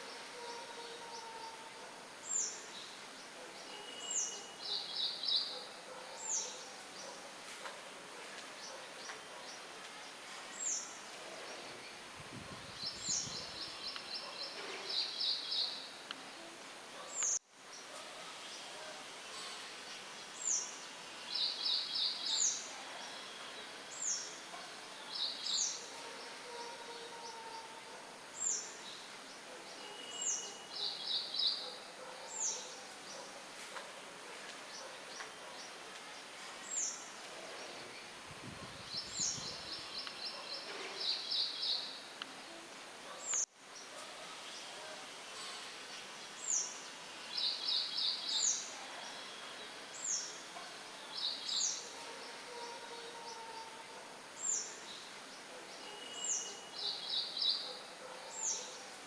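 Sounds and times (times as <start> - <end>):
songbirds chirping: 0.0 - 59.0
low gust of wind: 38.2 - 39.9.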